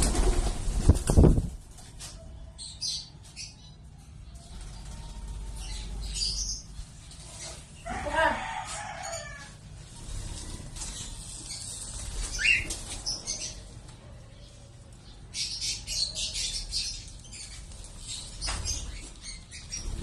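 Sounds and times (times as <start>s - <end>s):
birds flapping wings: 0.0s - 2.0s
birds chattering: 0.0s - 20.0s.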